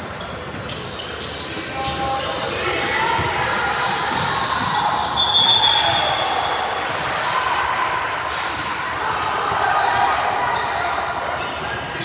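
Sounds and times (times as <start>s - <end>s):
whistle blowing: 5.2s - 6.1s.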